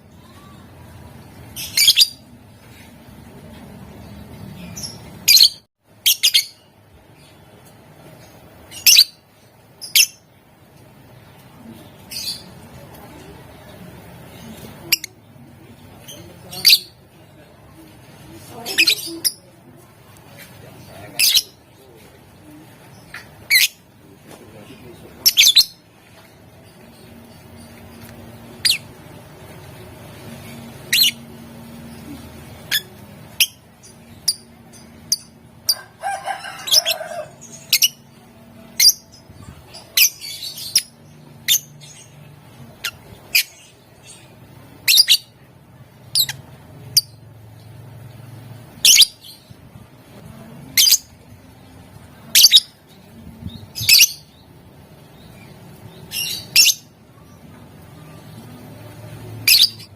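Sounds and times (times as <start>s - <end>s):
faint low hum: 0.0s - 59.9s
bird chattering: 24.9s - 25.8s, 30.8s - 31.3s
bird chirping: 29.7s - 35.8s, 59.2s - 59.9s.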